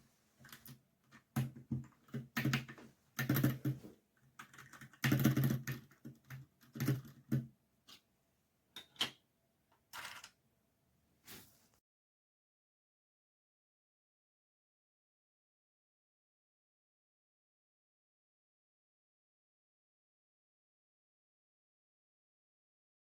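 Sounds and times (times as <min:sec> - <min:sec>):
typing on mechanical keyboard: 0:00.4 - 0:03.8, 0:04.4 - 0:07.5.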